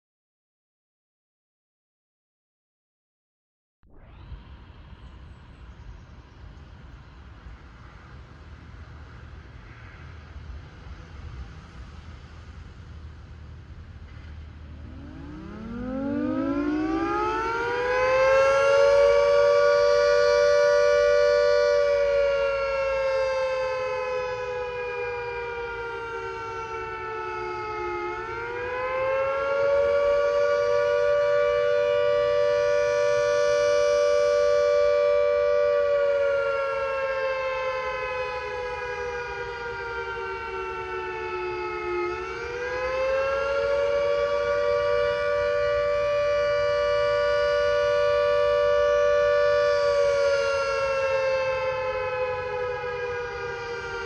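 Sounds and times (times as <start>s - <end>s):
siren winding up and wailing: 3.8s - 5.3s, 14.7s - 20.2s.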